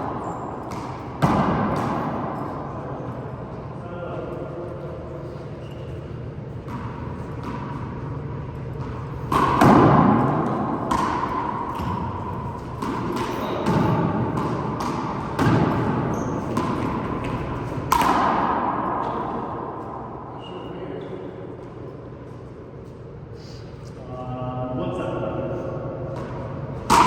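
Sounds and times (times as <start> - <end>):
handball smacking off walls: 0.0 - 2.4, 8.8 - 19.3.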